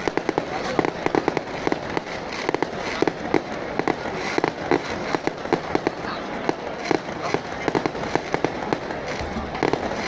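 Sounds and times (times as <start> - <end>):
continuous crackle: 0.0 - 10.0
fireworks bangs: 0.0 - 10.0.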